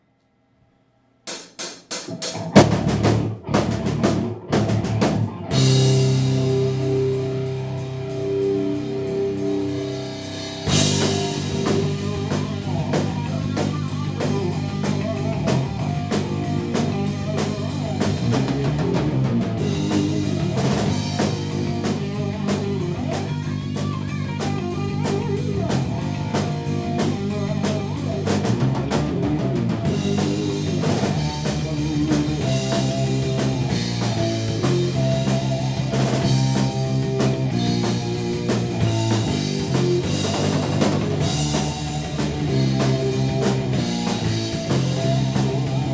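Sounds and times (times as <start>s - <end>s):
drum kit: 1.3s - 45.9s
rock band playing: 1.3s - 45.9s
guitar chord ringing: 5.5s - 13.4s.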